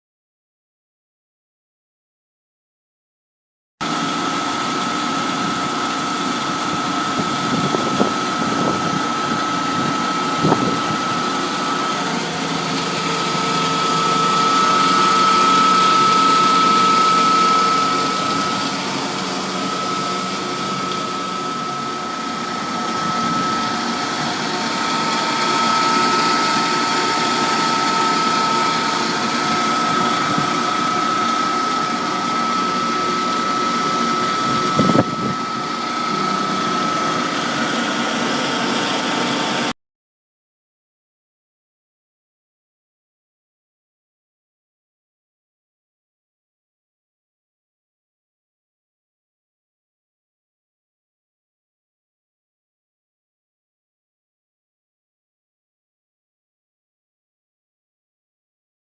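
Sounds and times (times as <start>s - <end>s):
pump humming with high whine: 3.8s - 39.8s.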